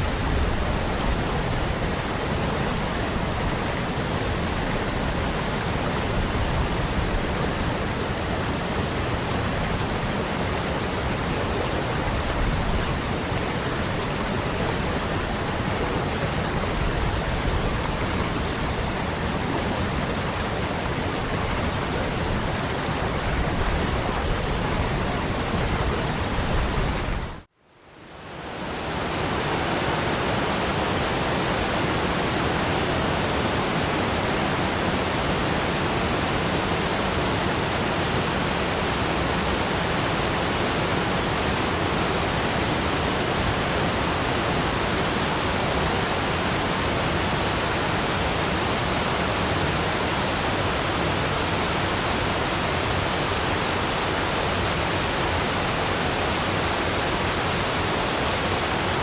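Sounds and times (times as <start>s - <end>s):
waterfall rushing: 27.8s - 59.0s.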